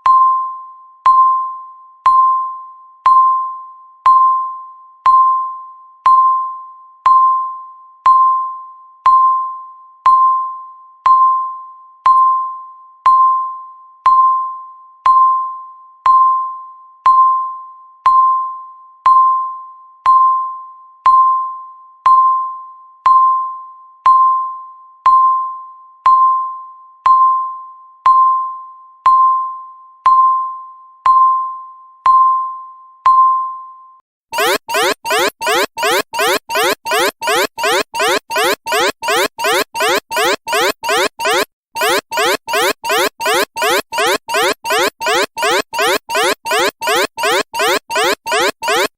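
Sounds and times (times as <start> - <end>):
fast-pulsing alarm: 34.4 - 48.9
timer beeping high ding: 34.4 - 48.9.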